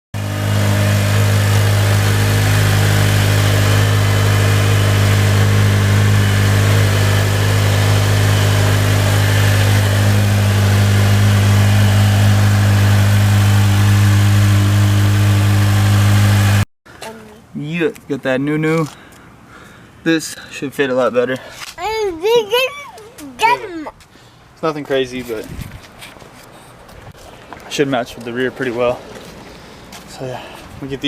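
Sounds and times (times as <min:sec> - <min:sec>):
car engine running: 0:00.2 - 0:16.7.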